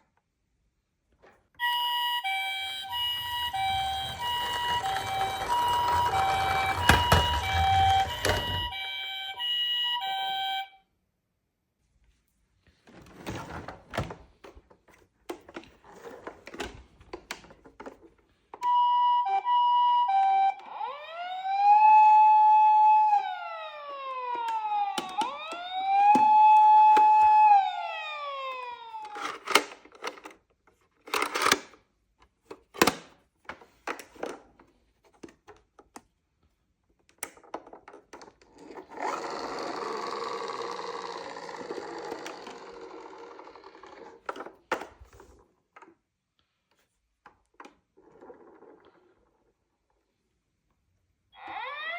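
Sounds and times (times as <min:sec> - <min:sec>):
toy siren beeps and wails: 0:01.6 - 0:10.8, 0:18.6 - 0:29.5, 0:51.4 - 0:51.9.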